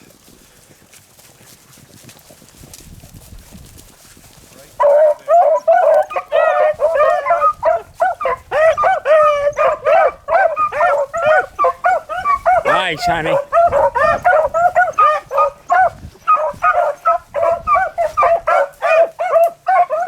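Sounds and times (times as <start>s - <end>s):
dogs baying and yelping: 4.8s - 20.0s.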